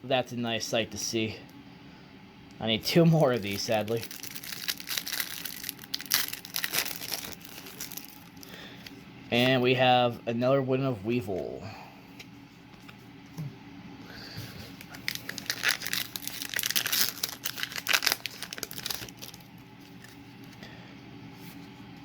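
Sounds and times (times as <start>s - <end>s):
foil wrapper crinkling and tearing: 3.1s - 8.6s, 14.7s - 20.5s.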